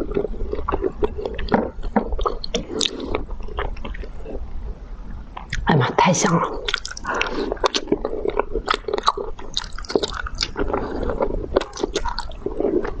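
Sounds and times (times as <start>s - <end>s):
person chewing food: 0.0s - 5.6s, 6.5s - 13.0s
wet mouth clicks and smacks: 6.7s - 8.0s.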